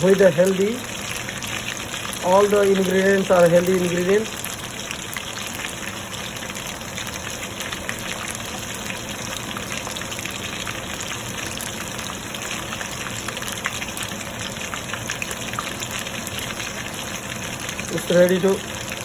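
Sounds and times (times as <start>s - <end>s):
chicken sizzling in hot oil: 0.0s - 19.0s.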